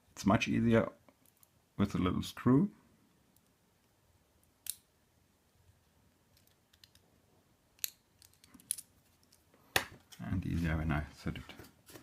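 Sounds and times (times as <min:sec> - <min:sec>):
light clicks of metal lock parts: 0:07.8 - 0:09.4.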